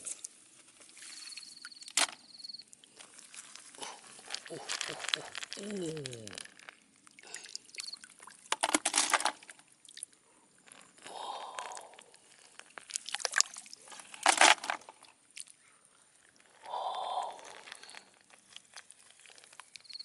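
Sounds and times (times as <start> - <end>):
water splashing and dripping: 0.0 - 15.6.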